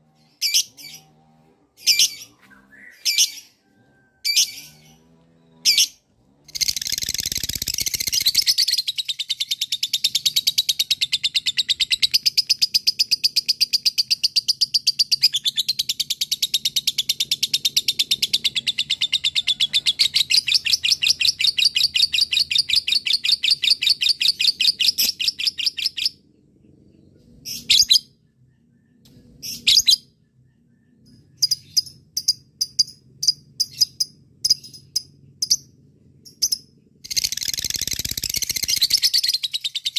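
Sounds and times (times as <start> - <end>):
lovebird chattering trill: 36.3 - 39.9.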